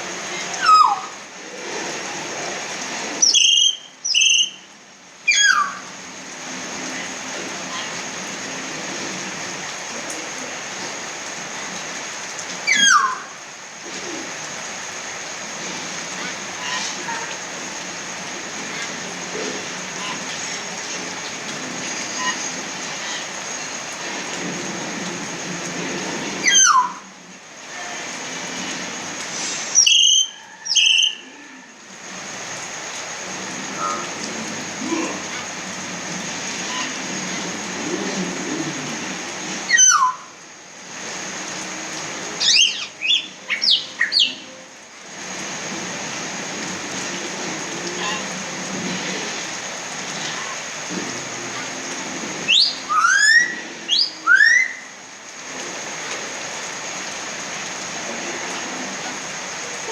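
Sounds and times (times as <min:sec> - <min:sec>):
steady rain falling: 0:00.0 - 0:59.9
myna calling and whistling: 0:00.6 - 0:01.2, 0:03.2 - 0:04.6, 0:05.3 - 0:05.8, 0:12.7 - 0:13.2, 0:26.4 - 0:27.0, 0:29.8 - 0:31.2, 0:39.7 - 0:40.3, 0:42.4 - 0:44.5, 0:52.5 - 0:54.9
bird whistle falling in pitch: 0:03.2 - 0:04.6, 0:52.5 - 0:54.8.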